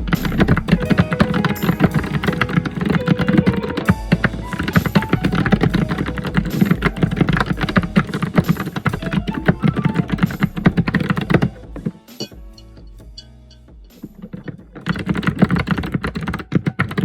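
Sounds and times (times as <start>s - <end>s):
typing on computer keyboard: 14.8s - 17.0s.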